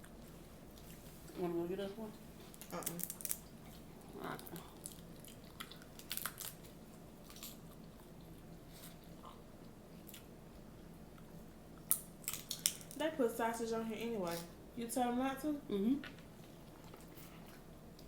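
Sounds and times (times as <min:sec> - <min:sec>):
chewing with crunches: 0:02.4 - 0:13.0, 0:16.0 - 0:18.0.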